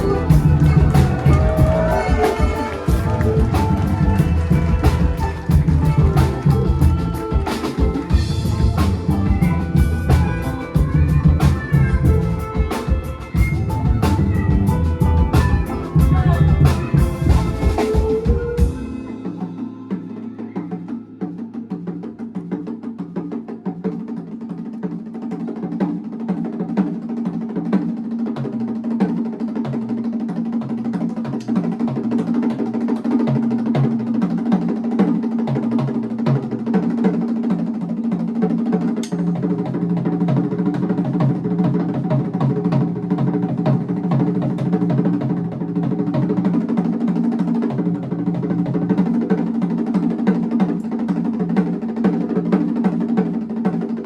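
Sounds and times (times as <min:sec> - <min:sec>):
repeating bass line: 0:00.0 - 0:12.7, 0:13.4 - 0:17.7
busy drumming and percussion: 0:00.0 - 0:54.0.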